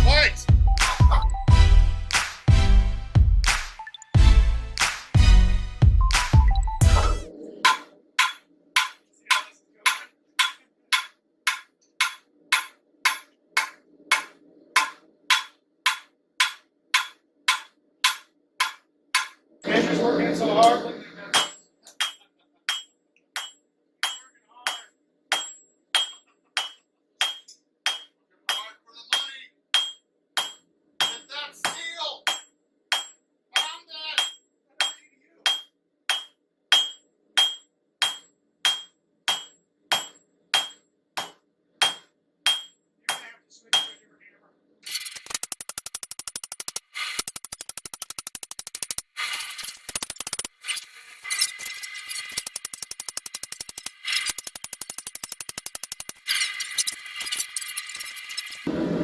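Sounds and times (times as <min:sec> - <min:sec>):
hammer striking metal on anvil: 0:06.9 - 0:19.4, 0:21.3 - 0:44.0.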